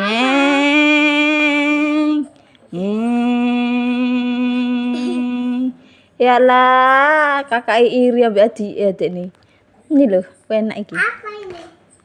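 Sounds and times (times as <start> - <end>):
person imitating airplane engine: 2.8 - 5.8.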